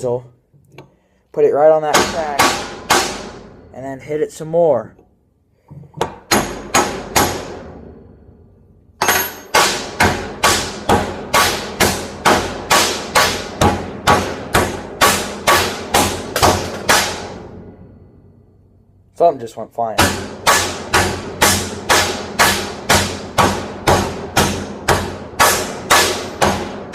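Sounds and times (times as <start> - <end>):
hammer striking steel chisel: 5.9 - 7.6, 9.0 - 17.3, 20.0 - 26.9.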